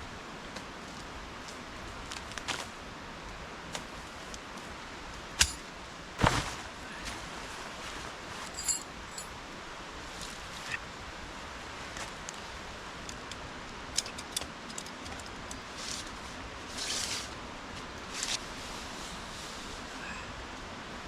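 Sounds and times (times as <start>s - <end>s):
short rustles: 6.2s - 9.3s.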